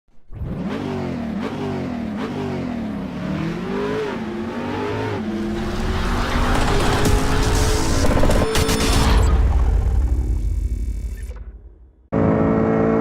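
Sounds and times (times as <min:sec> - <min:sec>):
motorcycle engine revving: 0:00.3 - 0:08.5.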